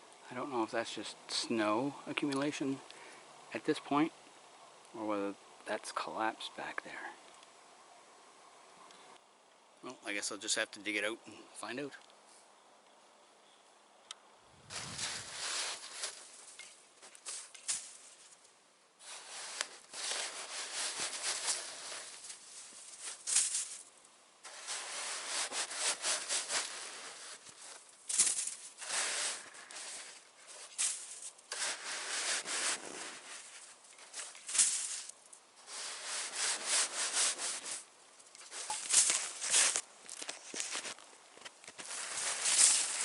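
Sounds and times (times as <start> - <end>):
shovel scraping through snow: 14.7 - 18.0, 19.0 - 39.8, 41.8 - 43.0.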